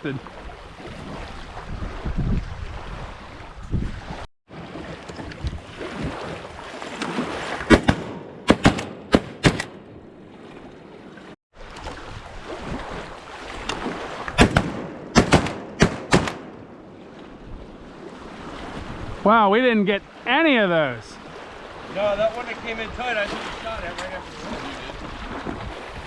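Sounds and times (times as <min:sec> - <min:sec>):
water noise: 0:00.0 - 0:26.0
wind: 0:00.0 - 0:26.0
shotgun volleys: 0:07.7 - 0:10.0, 0:14.4 - 0:16.7.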